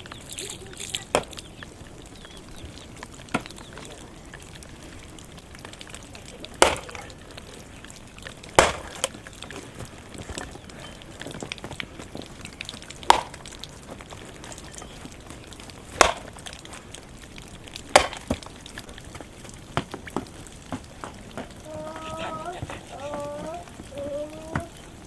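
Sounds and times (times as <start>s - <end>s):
loud sharp chopping blows: 6.6s - 7.1s, 8.6s - 9.2s, 13.0s - 13.4s, 16.0s - 16.4s, 17.9s - 18.4s.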